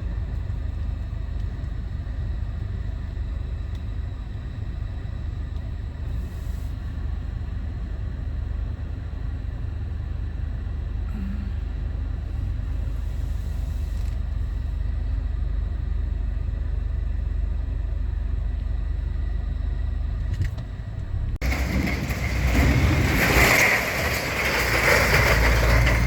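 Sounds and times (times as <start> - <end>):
vehicle engine rumble: 0.0 - 26.0
road noise: 18.4 - 26.0.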